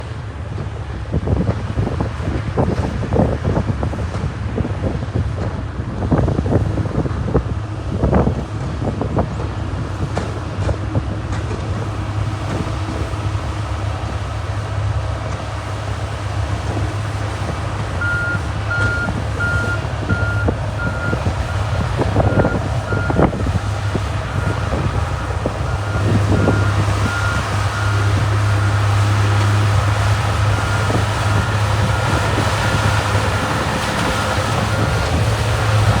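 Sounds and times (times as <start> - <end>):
heavy machinery diesel engine: 0.0 - 36.0
reversing alarm beeping: 18.0 - 36.0.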